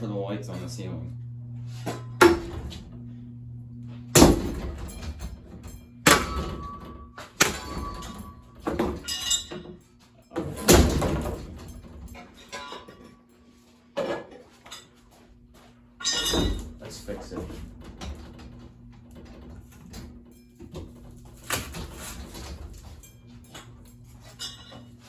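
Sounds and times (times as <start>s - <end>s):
loud crashing impacts: 4.1s - 5.3s.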